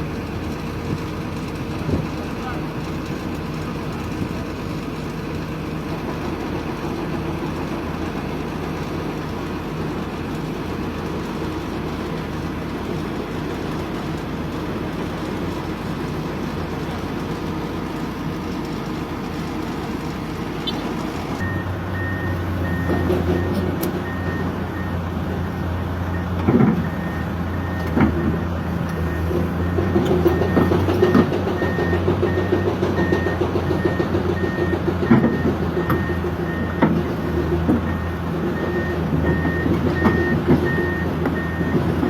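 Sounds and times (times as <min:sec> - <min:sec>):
heavy diesel engine running: 0:00.0 - 0:42.0
reversing alarm beeping: 0:21.4 - 0:25.0, 0:26.1 - 0:37.0, 0:37.9 - 0:41.9.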